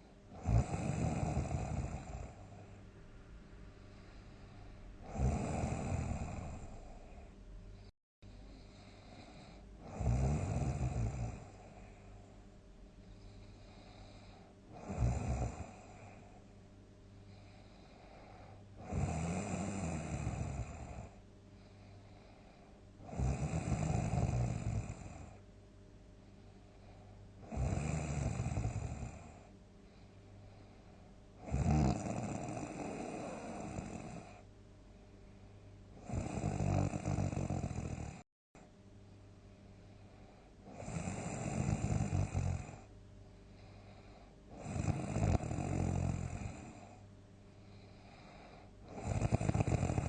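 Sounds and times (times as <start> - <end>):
person snoring: 0.0 - 2.7, 3.9 - 7.9, 8.5 - 12.1, 13.2 - 16.3, 17.3 - 21.2, 21.8 - 25.4, 27.4 - 29.5, 31.4 - 34.4, 36.0 - 38.2, 40.1 - 42.9, 43.6 - 47.0, 47.6 - 50.0
person breathing faintly: 1.8 - 5.2, 6.2 - 9.8, 11.3 - 14.7, 15.7 - 18.8, 21.0 - 23.0, 26.2 - 27.4, 29.1 - 31.3, 39.4 - 40.8, 42.8 - 44.6, 46.6 - 49.0.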